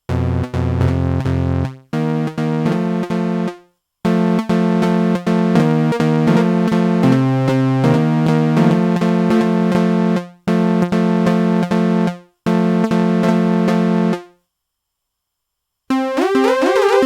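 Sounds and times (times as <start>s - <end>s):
synthesizer repeated chord: 0.1s - 3.5s, 4.1s - 14.2s
synth pattern with sliding notes: 5.5s - 9.9s.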